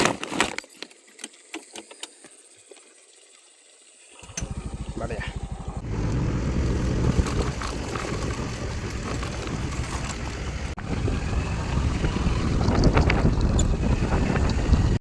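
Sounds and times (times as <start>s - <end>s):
steady low rumble: 4.4s - 15.0s
wind buffeting microphone: 5.7s - 15.0s.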